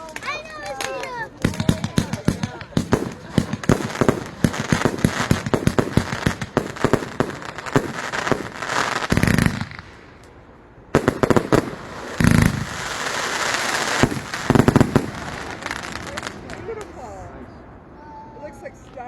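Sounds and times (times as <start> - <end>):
fireworks crackling and popping: 0.0 - 17.2
fireworks booms: 1.4 - 10.3, 10.9 - 17.1.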